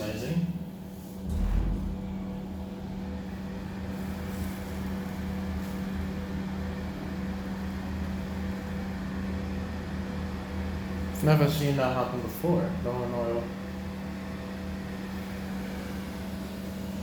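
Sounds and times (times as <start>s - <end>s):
hydraulic pump motor humming: 1.1s - 9.2s.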